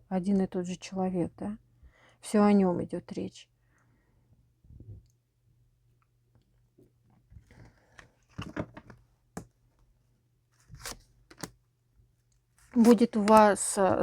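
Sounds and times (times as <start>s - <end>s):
cards rustling and tapping: 10.6s - 11.6s, 12.6s - 13.6s.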